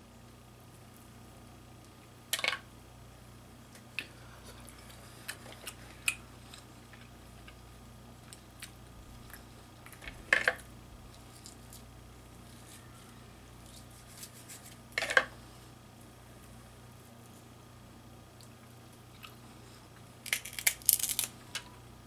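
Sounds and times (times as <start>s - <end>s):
shells clicking and cracking: 20.2s - 21.3s.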